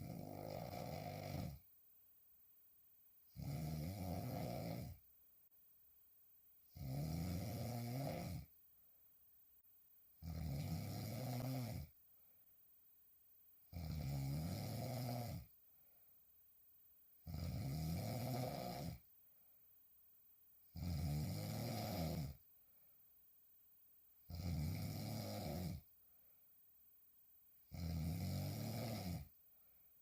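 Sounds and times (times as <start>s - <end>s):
woman snoring: 0.0s - 1.6s, 3.3s - 5.0s, 6.7s - 8.5s, 10.2s - 12.0s, 13.7s - 15.5s, 17.2s - 19.0s, 20.8s - 22.4s, 24.3s - 25.9s, 27.7s - 29.4s
quiet breaths: 0.0s - 23.2s.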